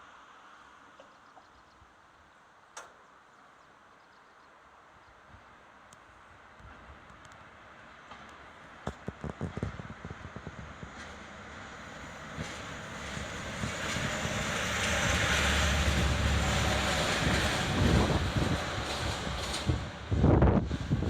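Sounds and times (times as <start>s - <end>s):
train wheel noise: 7.8s - 21.0s
wind buffeting microphone: 8.9s - 21.0s
locomotive engine rumble: 9.1s - 21.0s.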